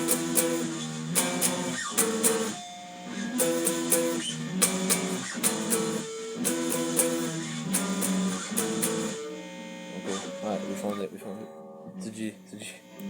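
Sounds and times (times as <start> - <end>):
guitar power chords: 0.0 - 13.0.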